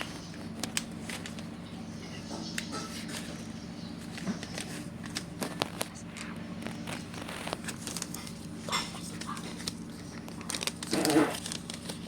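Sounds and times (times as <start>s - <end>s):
steady low hum: 0.0s - 12.0s
paper bag crinkling: 4.0s - 12.0s.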